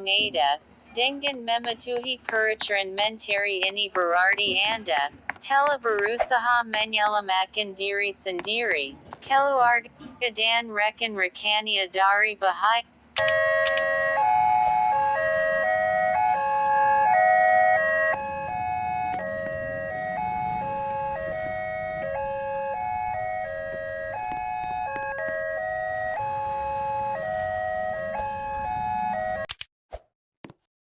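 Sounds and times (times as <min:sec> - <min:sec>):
level-crossing warning siren melody: 0:13.2 - 0:29.5.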